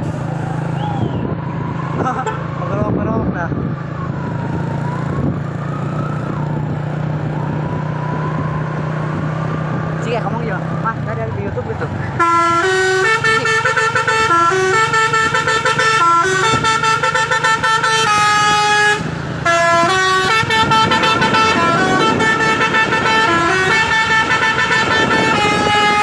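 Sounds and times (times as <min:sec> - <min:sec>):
truck air horn playing tune: 0:12.1 - 0:26.0.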